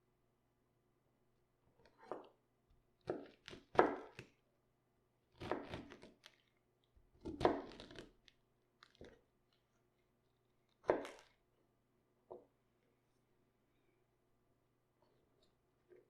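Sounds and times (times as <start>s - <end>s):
knife cutting raw cabbage: 3.0s - 4.3s, 5.3s - 6.5s, 7.2s - 9.1s, 10.8s - 11.3s.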